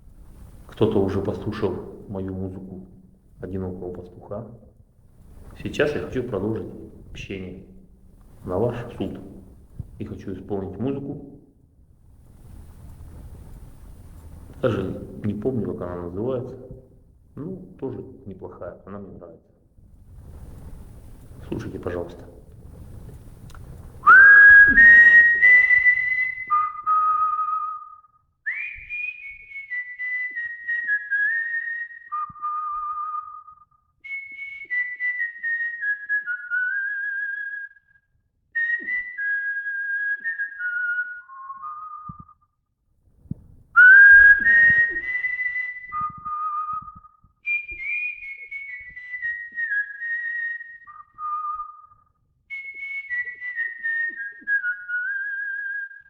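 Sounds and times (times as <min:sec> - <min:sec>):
man whistling a melody: 0:24.0 - 0:42.6, 0:43.8 - 0:56.0.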